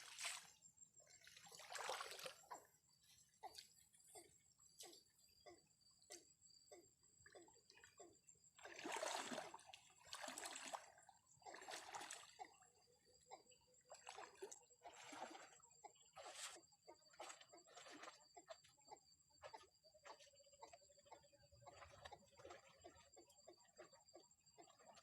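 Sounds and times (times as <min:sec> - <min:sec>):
flood water splashing: 0:01.3 - 0:02.4, 0:08.6 - 0:12.6
water drips and trickles: 0:17.2 - 0:18.6.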